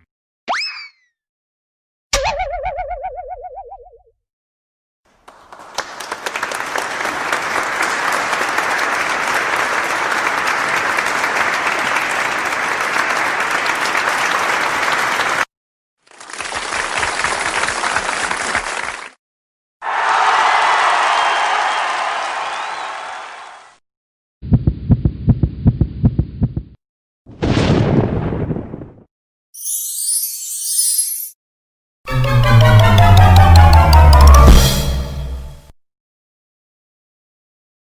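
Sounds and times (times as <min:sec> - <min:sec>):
audience applause: 0:05.2 - 0:15.5, 0:16.1 - 0:19.2, 0:19.8 - 0:23.7.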